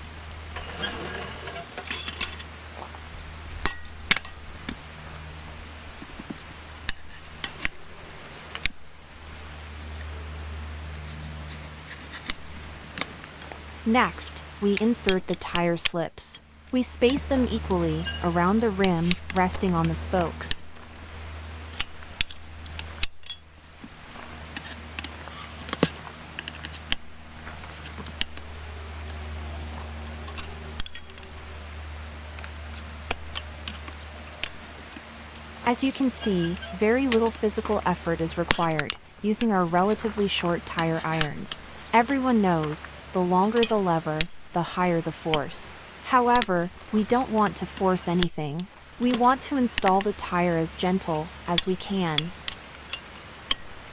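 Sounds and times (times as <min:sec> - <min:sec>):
tire irons clinking on wheel rim: 0:00.0 - 0:10.1, 0:14.2 - 0:44.5, 0:48.6 - 0:53.9
steady low hum: 0:00.0 - 0:53.9
clicks and clinks on wheel: 0:00.6 - 0:02.5, 0:30.2 - 0:31.3.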